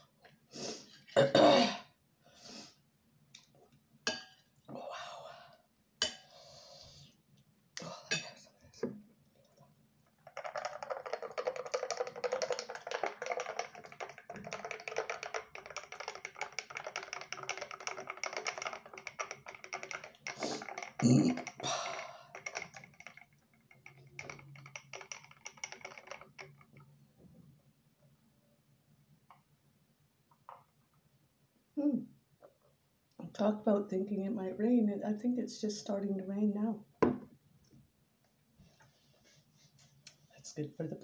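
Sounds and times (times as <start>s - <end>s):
mouth sound: 20.4s - 21.5s.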